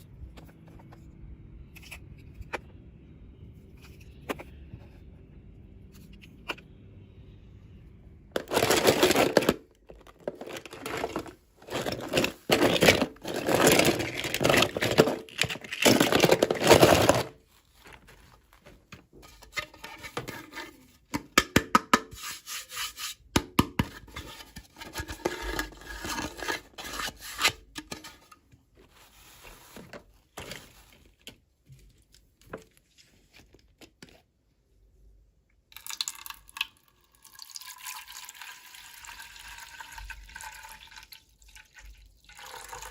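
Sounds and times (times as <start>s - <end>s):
packaging tearing and crinkling: 8.4s - 18.1s.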